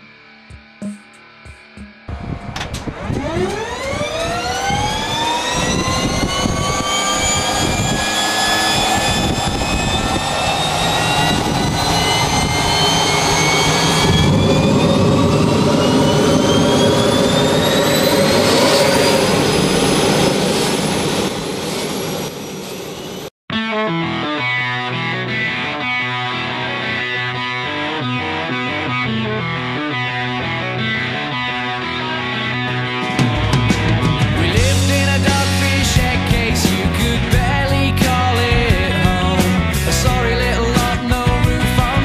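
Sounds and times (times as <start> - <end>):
helicopter turbine whine: 2.1 - 23.3.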